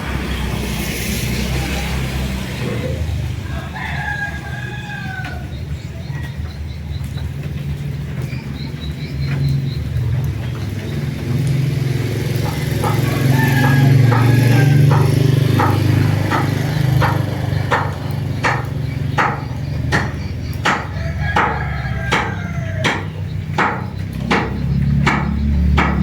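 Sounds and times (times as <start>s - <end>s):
sharp knocks like hammering: 12.4s - 26.0s.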